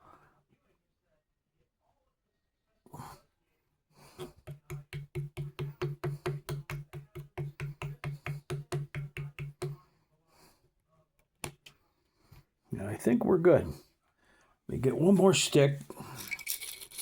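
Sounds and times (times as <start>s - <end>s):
rapid hollow tapping on wood: 4.4s - 9.8s.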